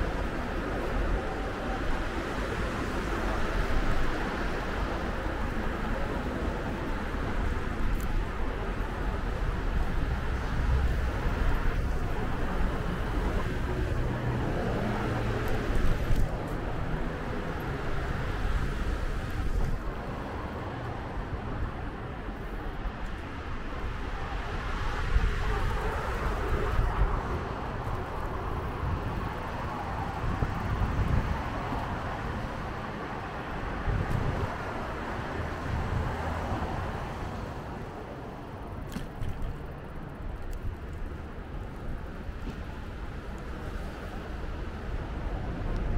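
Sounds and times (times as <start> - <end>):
city street traffic: 0.0 - 45.9
wind buffeting microphone: 0.0 - 45.9.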